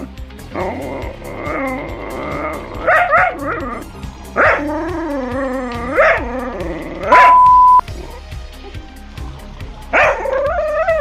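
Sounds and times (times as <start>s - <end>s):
music with steady beat: 0.1s - 11.0s
dog whining: 1.4s - 7.9s
dog barking in short yips: 7.1s - 7.8s.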